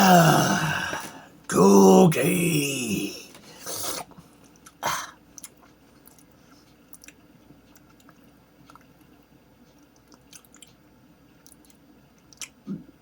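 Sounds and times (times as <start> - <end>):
person chewing a cookie: 4.2 - 12.9
faint mouth clicks: 9.9 - 10.8.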